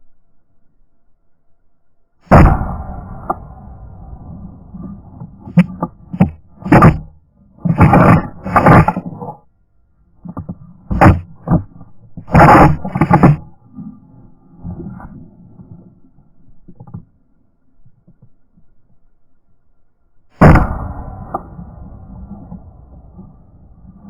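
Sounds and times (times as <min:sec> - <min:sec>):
short loud irregular bursts: 0:05.4 - 0:09.0, 0:10.9 - 0:11.3, 0:12.3 - 0:13.4.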